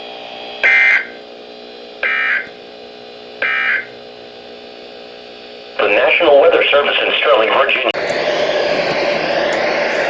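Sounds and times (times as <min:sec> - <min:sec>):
radio hum: 0:05.7 - 0:10.0
electronic warbling bursts: 0:08.0 - 0:10.0.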